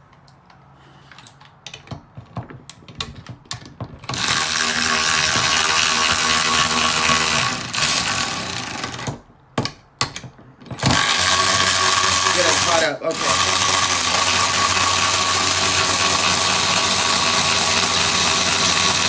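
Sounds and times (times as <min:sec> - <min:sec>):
electric ratchets whirring: 0:04.1 - 0:09.2, 0:10.8 - 0:19.0.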